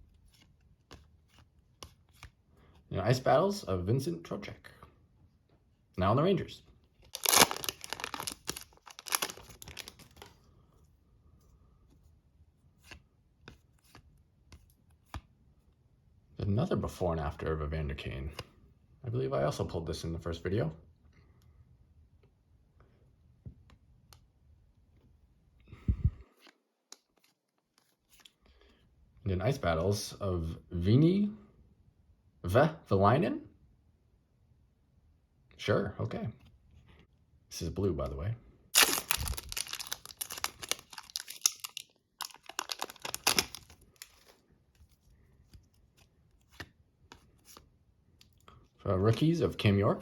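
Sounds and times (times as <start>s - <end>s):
paper rustle: 7.0s - 10.4s, 38.8s - 47.6s
foil wrapper tearing and crinkling: 7.1s - 10.3s, 38.8s - 44.3s
trading cards clicking: 38.8s - 43.7s.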